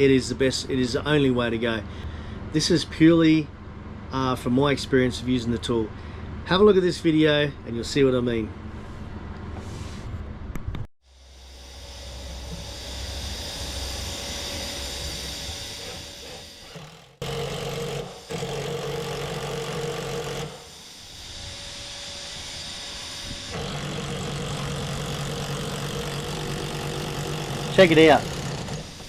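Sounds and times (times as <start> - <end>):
power drill boring into timber: 11.6 - 29.0.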